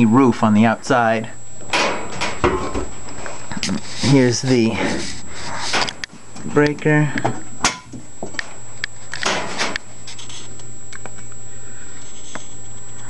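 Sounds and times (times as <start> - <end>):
door rubbing scrape: 3.7 - 6.0.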